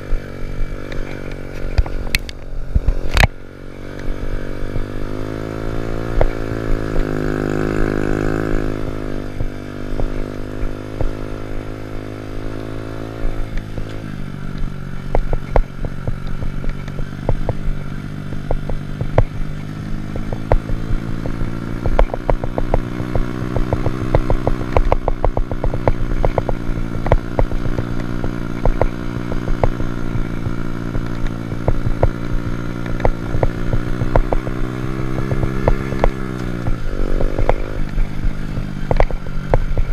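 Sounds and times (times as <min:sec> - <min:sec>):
small motorcycle engine running: 0:00.0 - 0:39.9
sharp clicks and knocks: 0:00.8 - 0:04.9, 0:13.1 - 0:17.8, 0:18.4 - 0:39.9.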